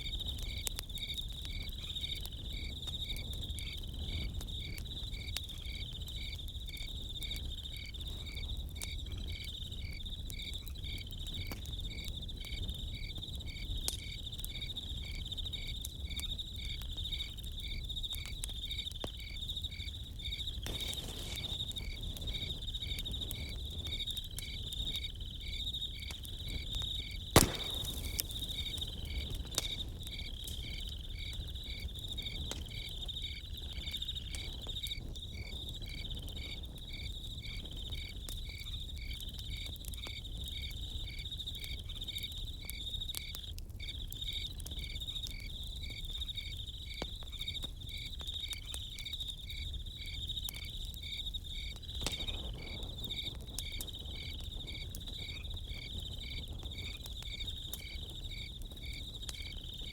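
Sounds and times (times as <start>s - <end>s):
campfire crackling and popping: 0.0s - 59.9s
crickets chirping: 0.0s - 59.9s.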